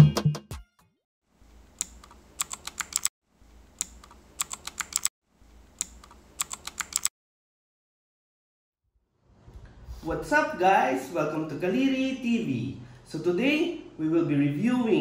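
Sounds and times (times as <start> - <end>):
mechanical keyboard typing: 1.8 - 3.1, 3.8 - 5.1, 5.8 - 7.1.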